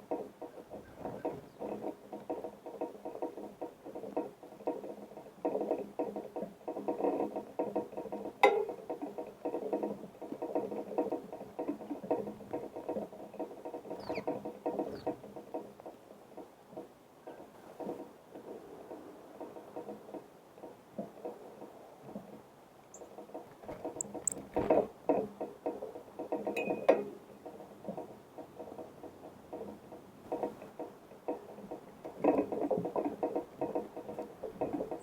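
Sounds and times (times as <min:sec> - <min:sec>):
birds pecking at feeder: 0:00.1 - 0:16.8, 0:22.9 - 0:26.8, 0:27.4 - 0:35.0
faint high bird chirps: 0:14.0 - 0:15.2.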